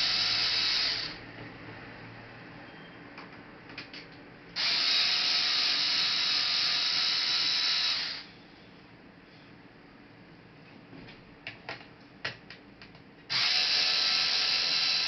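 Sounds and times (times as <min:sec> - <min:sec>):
electric screwdriver whine: 0:00.0 - 0:01.2, 0:04.6 - 0:08.3, 0:13.3 - 0:15.0.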